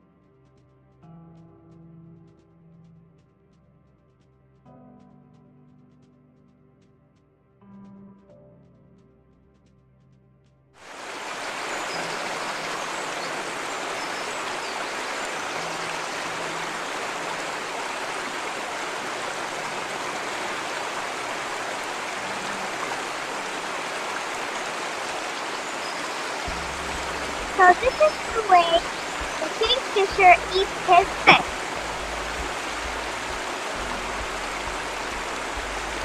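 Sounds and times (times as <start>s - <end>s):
faint music: 0.0s - 36.0s
flowing water rushing: 10.8s - 36.0s.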